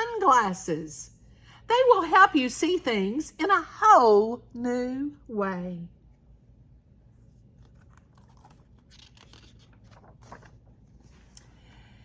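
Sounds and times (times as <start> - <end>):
book pages rustling: 7.2 - 11.6.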